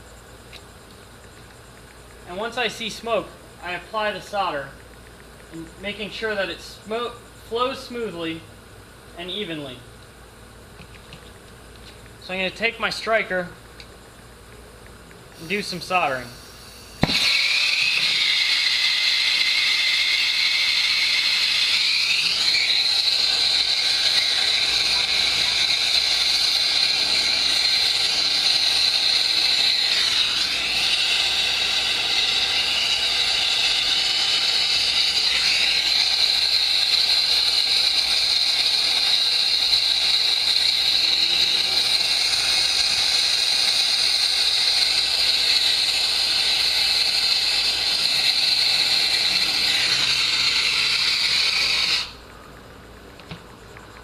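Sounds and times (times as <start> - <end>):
torch flame hissing: 15.3 - 52.4.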